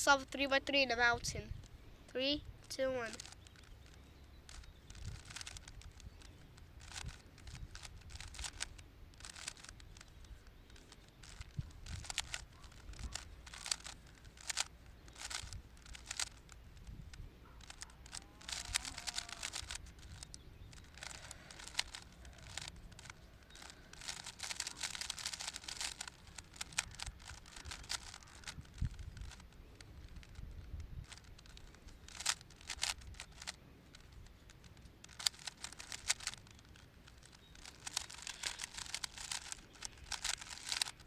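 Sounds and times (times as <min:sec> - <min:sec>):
puzzle cube clicking and rattling: 0:00.0 - 0:41.0
wind rumble on microphone: 0:11.4 - 0:13.4, 0:16.7 - 0:17.6, 0:26.9 - 0:31.2.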